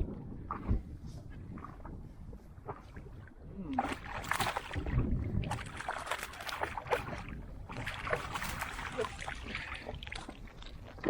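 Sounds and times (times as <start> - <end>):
water splashing: 2.6 - 11.0.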